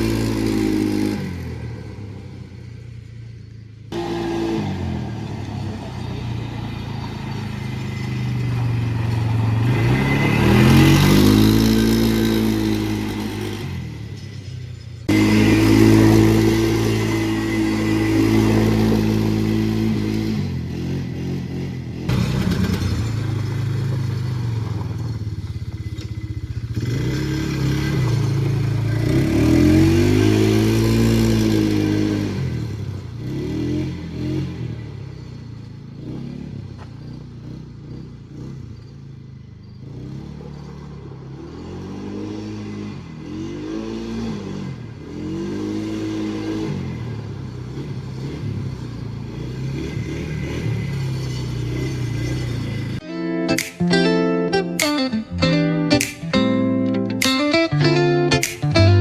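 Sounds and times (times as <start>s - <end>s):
quad engine revving: 0.0s - 3.2s, 3.9s - 38.8s, 39.8s - 53.0s
clatter: 5.2s - 34.1s, 45.7s - 53.0s.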